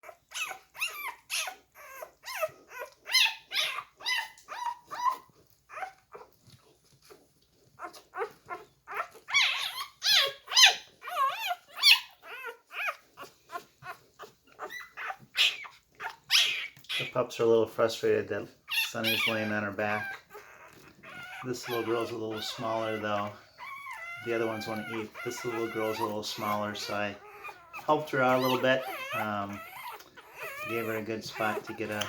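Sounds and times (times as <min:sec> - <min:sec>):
puppies whining and yelping: 0:00.0 - 0:32.0.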